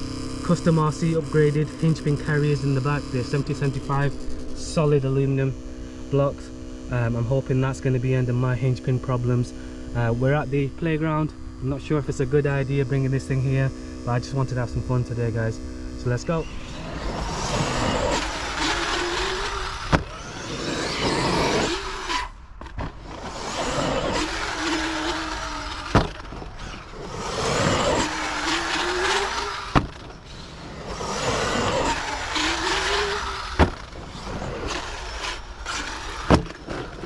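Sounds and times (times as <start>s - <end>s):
electric motor whining: 0.0s - 37.0s
tyres on dirt: 0.0s - 37.0s.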